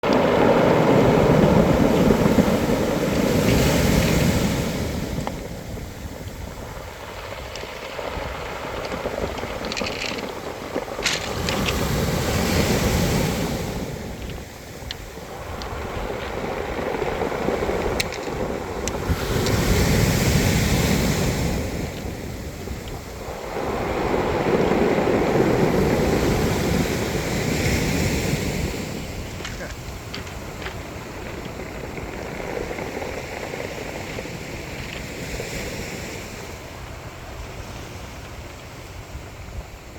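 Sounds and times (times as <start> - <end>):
waves washing onto pebble beach: 0.0 - 39.9
stones clicking in the wash: 6.2 - 23.2, 29.0 - 35.7.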